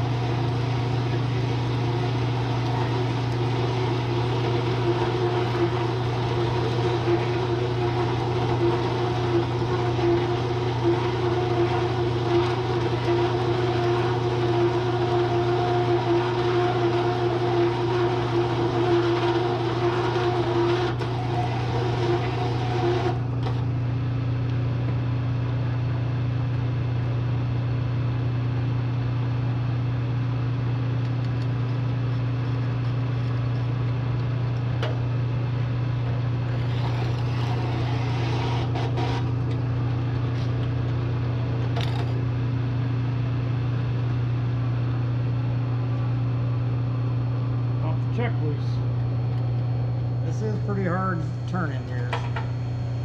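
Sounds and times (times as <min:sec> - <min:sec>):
milling machine humming: 0:00.0 - 0:27.6, 0:28.9 - 0:53.0
hole saw cutting steel: 0:36.5 - 0:39.3.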